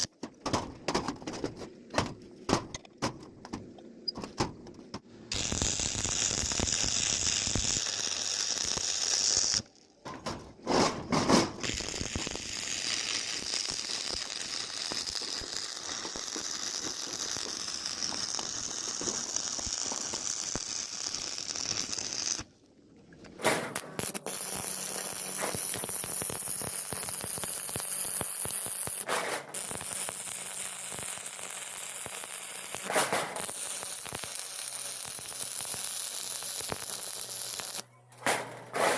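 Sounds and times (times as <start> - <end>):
crackling hiss: 5.3 - 9.8, 11.4 - 22.5, 23.4 - 37.8.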